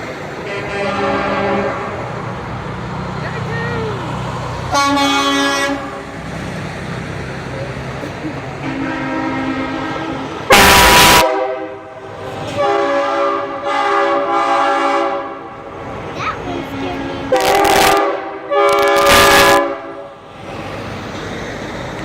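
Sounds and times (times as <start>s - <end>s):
truck air horns blasting: 0.4s - 2.1s, 4.7s - 6.2s, 8.6s - 15.5s, 16.7s - 20.1s.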